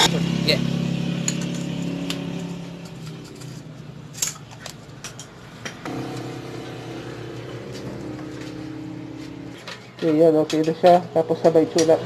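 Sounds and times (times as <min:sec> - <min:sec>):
engine hum: 0:00.0 - 0:12.0
metallic clicks of parts handled: 0:02.9 - 0:05.8.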